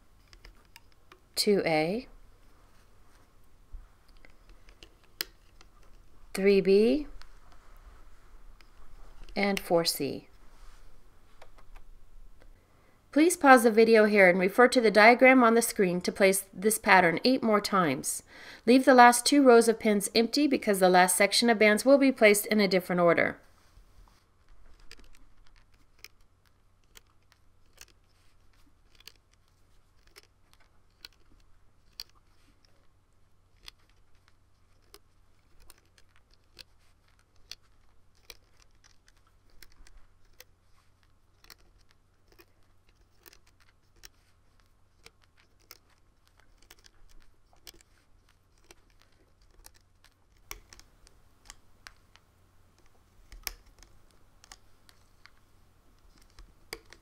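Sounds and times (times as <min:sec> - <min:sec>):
rubber bands clicking onto plastic pins: 0:24.7 - 0:32.5.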